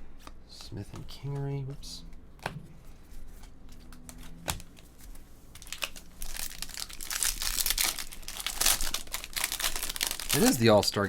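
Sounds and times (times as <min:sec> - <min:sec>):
foil pack crinkling and tearing: 0:05.5 - 0:11.0.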